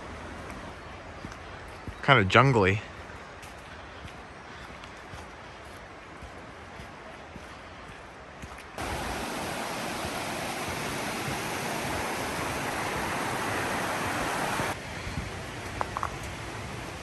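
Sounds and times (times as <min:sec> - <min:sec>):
creek water rushing: 0:08.8 - 0:14.8
faint outdoor hiss: 0:08.8 - 0:17.0.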